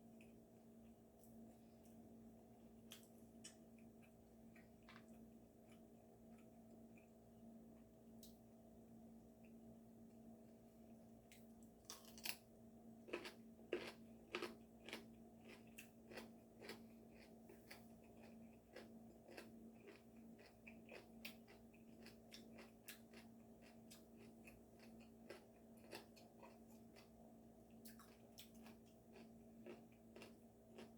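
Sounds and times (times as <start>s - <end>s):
faint steady hum: 0.0s - 30.9s
chewing crunchy food: 2.9s - 7.2s, 11.3s - 30.9s.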